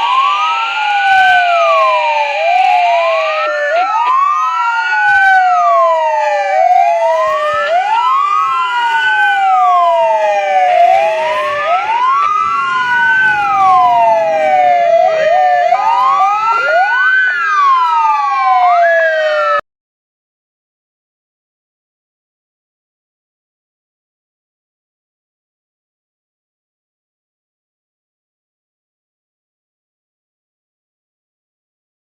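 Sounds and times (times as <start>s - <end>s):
fire truck sirens wailing: 0.0s - 19.6s.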